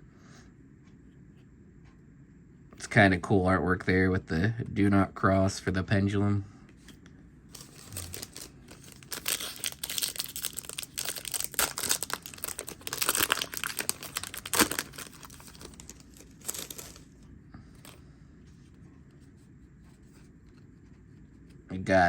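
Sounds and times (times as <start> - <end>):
foil pack crinkling and tearing: 7.5 - 17.2.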